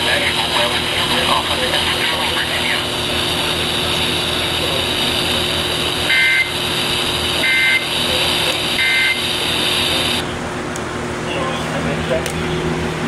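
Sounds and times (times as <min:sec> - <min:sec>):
radio static hiss: 0:00.0 - 0:10.3
two-tone data bursts: 0:06.0 - 0:06.6, 0:07.4 - 0:08.0, 0:08.7 - 0:10.2.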